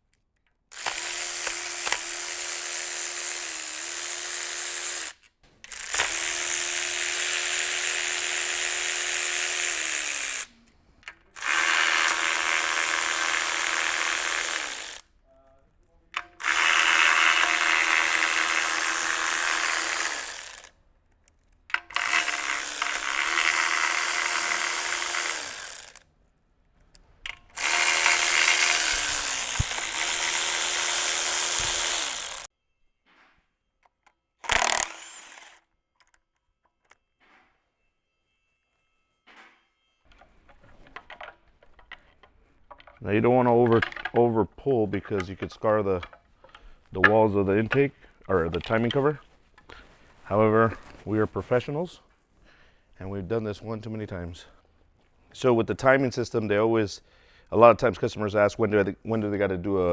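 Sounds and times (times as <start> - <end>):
power tool motor whine: 0.7 - 10.5, 11.4 - 15.0, 16.4 - 20.7, 21.9 - 26.0, 27.5 - 32.5, 34.4 - 35.6.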